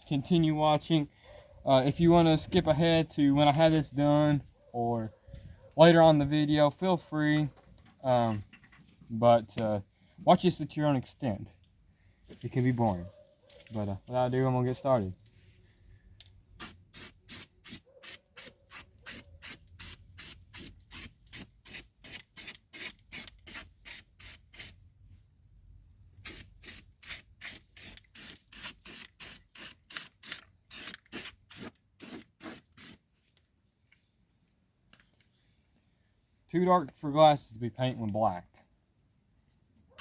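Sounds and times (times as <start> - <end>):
aerosol can spraying in bursts: 16.6 - 24.8, 26.2 - 33.0.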